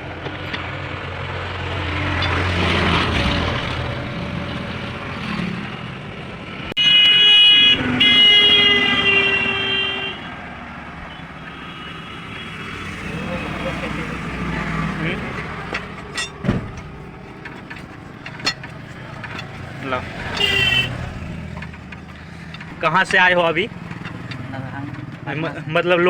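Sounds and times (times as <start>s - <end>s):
vehicle rumbling past: 0.0s - 6.8s, 12.2s - 25.7s
road traffic: 0.0s - 26.0s
vehicle horn blowing: 6.8s - 10.4s, 20.3s - 21.0s.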